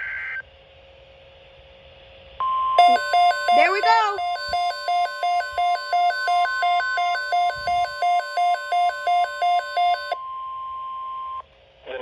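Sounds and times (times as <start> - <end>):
steady warning alarm tone: 2.4 - 10.2
two-pitch electronic alarm: 2.4 - 10.2.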